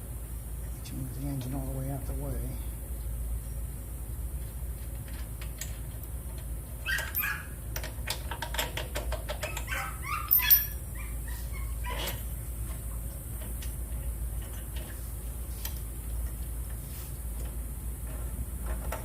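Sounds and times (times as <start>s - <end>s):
high-pitched animal cries: 6.8s - 7.6s, 9.4s - 12.2s.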